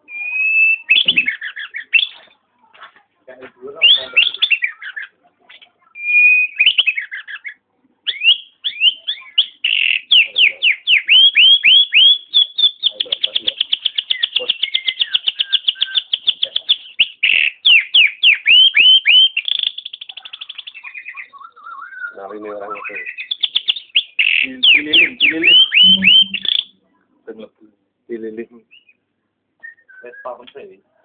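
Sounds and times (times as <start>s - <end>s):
myna whistling and trilling: 0.0s - 2.3s, 3.8s - 5.1s, 5.9s - 7.5s, 8.1s - 26.7s, 29.6s - 30.3s.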